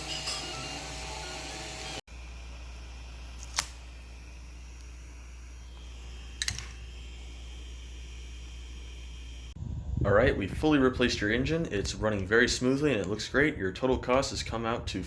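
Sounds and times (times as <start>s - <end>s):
stepper motors whining: 0.0s - 2.0s
sharp click: 3.4s - 3.8s, 6.4s - 6.8s.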